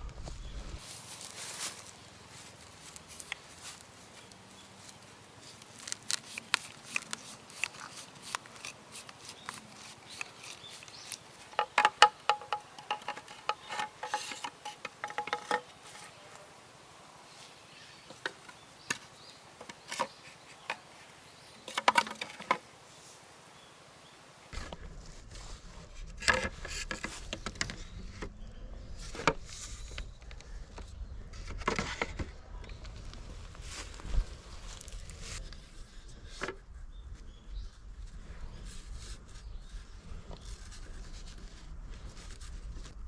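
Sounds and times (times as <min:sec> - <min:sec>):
hard objects clicking and knocking: 0:08.6 - 0:15.8.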